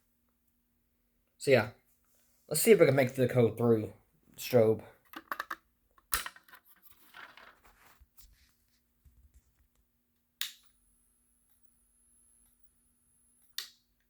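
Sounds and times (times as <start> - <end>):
faint high whine: 10.4 - 14.0.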